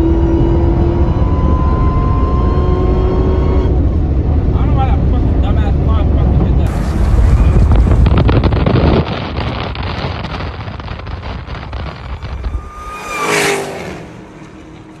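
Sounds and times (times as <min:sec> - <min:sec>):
car engine at full throttle: 0:00.0 - 0:15.0
exhaust crackling: 0:04.8 - 0:15.0.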